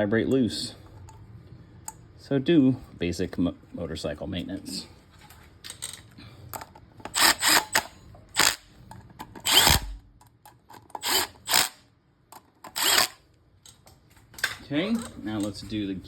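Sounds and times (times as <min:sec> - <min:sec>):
power drill short bursts: 0:07.2 - 0:07.8, 0:09.5 - 0:10.0, 0:11.0 - 0:11.8, 0:12.8 - 0:13.2.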